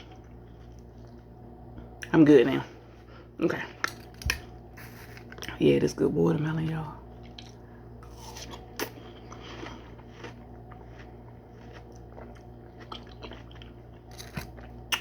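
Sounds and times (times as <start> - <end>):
person chewing watermelon: 0.0 - 2.0, 7.1 - 15.0.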